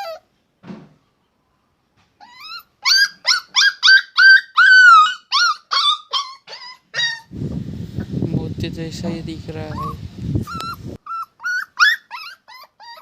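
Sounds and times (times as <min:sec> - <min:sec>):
puppy whimpering and yelping: 0:00.0 - 0:00.3, 0:02.2 - 0:07.3, 0:09.7 - 0:13.0.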